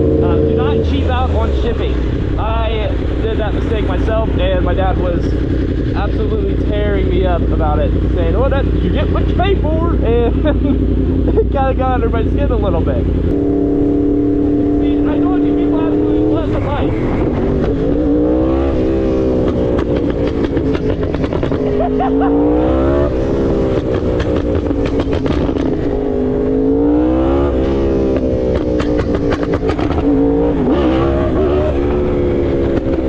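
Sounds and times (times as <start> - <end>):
exhaust crackling: 0.0 - 33.0
sportbike engine revving: 0.0 - 33.0.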